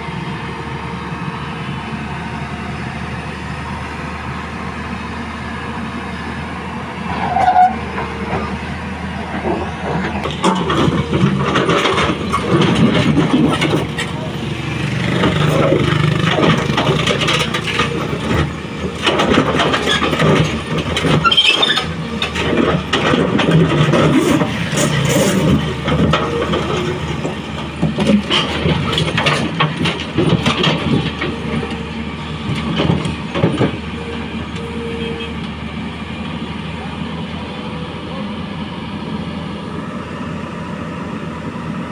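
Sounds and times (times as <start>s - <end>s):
diesel excavator engine running: 0.0s - 41.9s
knocks and clatter: 9.4s - 14.4s, 15.0s - 33.9s.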